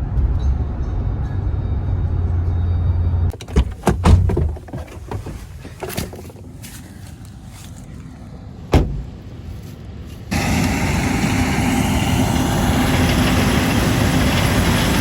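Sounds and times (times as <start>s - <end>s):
road rumble inside truck cab: 0.0s - 15.0s
truck door clunks and clicks: 3.3s - 6.5s, 8.7s - 9.2s.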